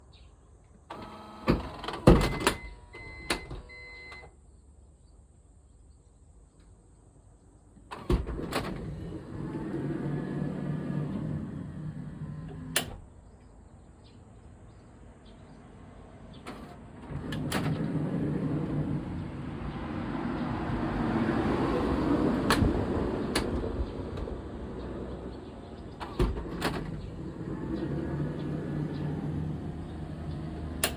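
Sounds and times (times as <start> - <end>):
sliding door motor whine: 0.9 - 3.9, 7.9 - 13.1, 16.5 - 19.6, 25.8 - 30.9
sharp door clunks: 1.5 - 3.7, 7.9 - 13.1, 22.4 - 24.4, 25.9 - 29.9.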